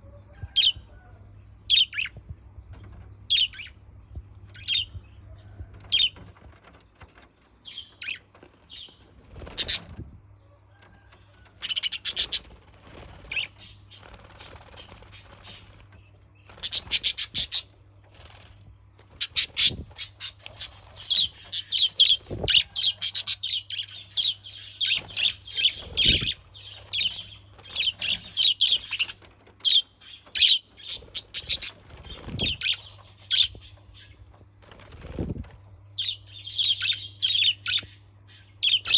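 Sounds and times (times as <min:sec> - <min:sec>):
budgerigars chattering and chirping: 0:01.7 - 0:02.1, 0:03.3 - 0:03.7, 0:04.6 - 0:04.9, 0:05.9 - 0:06.2, 0:07.7 - 0:10.0, 0:11.6 - 0:15.8, 0:16.5 - 0:17.7, 0:19.1 - 0:34.2, 0:36.0 - 0:38.9.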